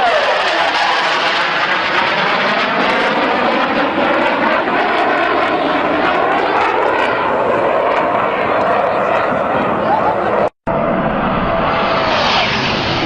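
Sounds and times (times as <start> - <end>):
fighter jet passing: 0.0 - 13.0.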